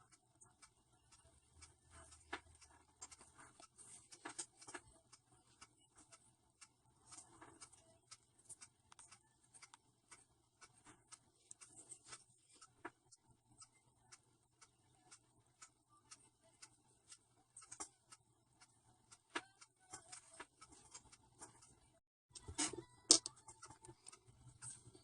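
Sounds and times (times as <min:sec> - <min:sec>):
faint clicks and taps of tools: 0:00.0 - 0:13.8, 0:16.6 - 0:21.8, 0:22.4 - 0:25.0.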